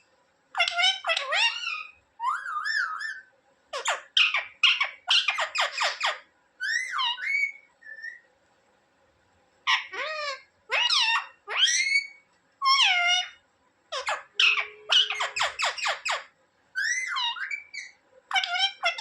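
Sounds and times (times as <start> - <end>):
parrot calling: 0.5 - 8.2, 9.7 - 19.0
parrot warbling whistle: 14.0 - 19.0.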